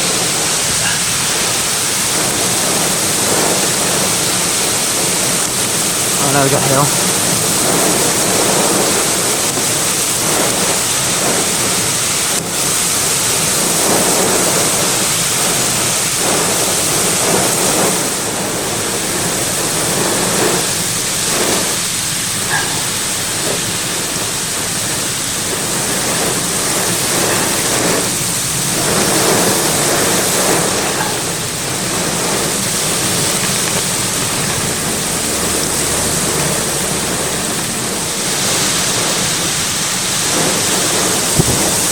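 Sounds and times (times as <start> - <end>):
heavy rain and hail: 0.0 - 41.9
strong wind gusts: 0.0 - 41.9.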